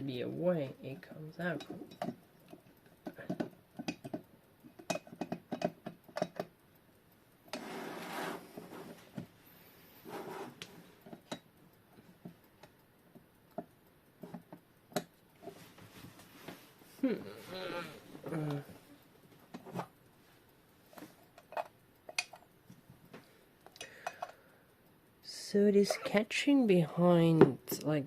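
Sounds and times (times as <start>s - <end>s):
clicks and taps of clock handling: 1.5s - 6.6s, 10.6s - 16.6s, 21.0s - 24.4s
rustling scrape: 7.6s - 9.1s, 10.0s - 10.6s.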